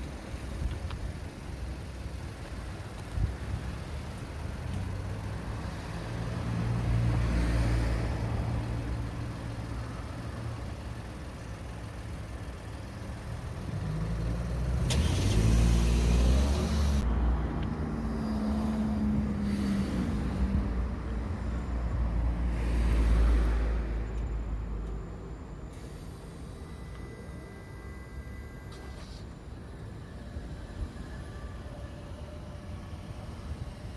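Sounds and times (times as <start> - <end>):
engine accelerating away: 13.2 - 21.1
motor vehicles passing: 13.2 - 24.8.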